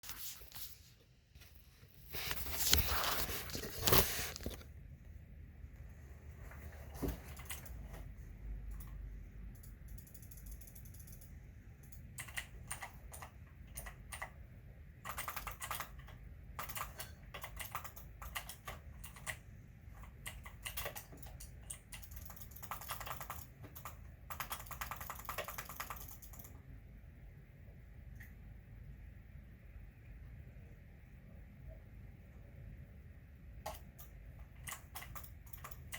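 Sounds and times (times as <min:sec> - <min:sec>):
typing on a computer keyboard: 0:07.0 - 0:08.1, 0:08.7 - 0:14.4, 0:15.0 - 0:26.6, 0:33.6 - 0:35.9.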